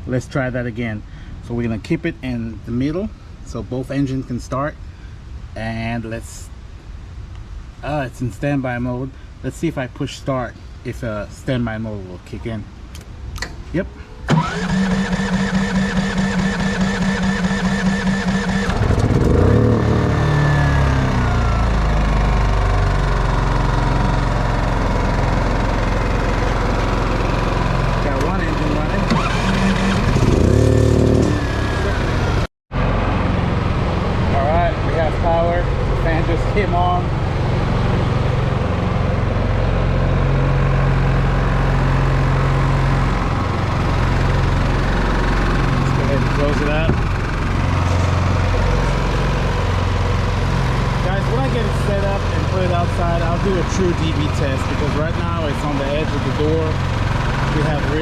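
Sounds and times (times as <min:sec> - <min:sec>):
generator engine running: 0:14.2 - 0:58.0
generator starter cranking: 0:14.3 - 0:20.2, 0:22.7 - 0:30.6.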